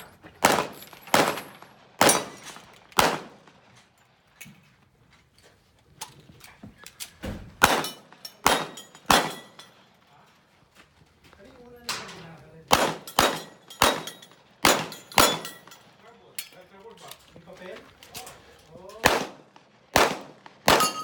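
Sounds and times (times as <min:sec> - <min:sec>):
pistol shots: 0:00.4 - 0:03.6, 0:07.6 - 0:09.6, 0:12.7 - 0:15.8, 0:19.0 - 0:21.0.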